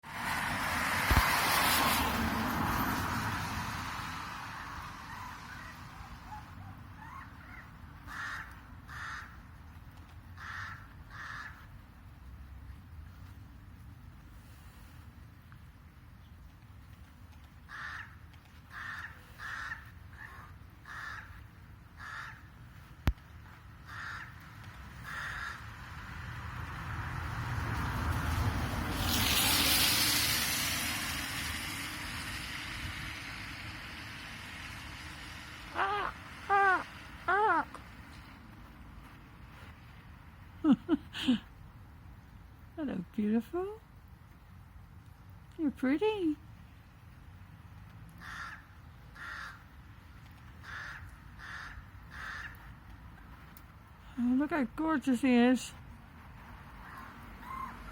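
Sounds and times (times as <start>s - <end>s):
vehicle rumble: 0.0s - 57.9s
tyre spray hiss on wet road: 0.1s - 6.3s, 14.2s - 15.5s, 22.0s - 40.6s.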